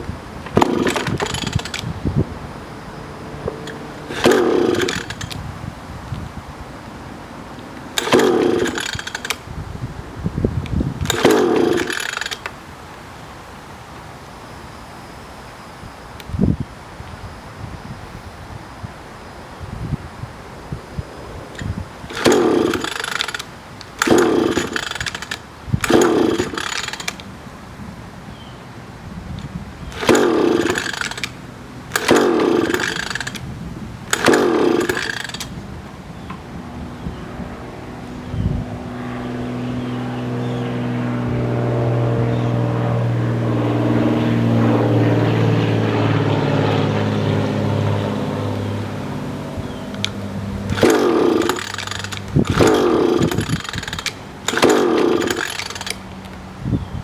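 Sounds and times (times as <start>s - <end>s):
outboard motor cranking: 0.0s - 13.5s, 21.4s - 38.2s, 38.8s - 56.9s
engine turning over: 0.0s - 13.9s, 21.2s - 27.8s, 28.8s - 38.2s, 38.8s - 56.8s
recoil starter pull: 0.4s - 6.3s, 7.5s - 12.8s, 21.5s - 27.5s, 29.3s - 36.4s, 49.0s - 56.6s.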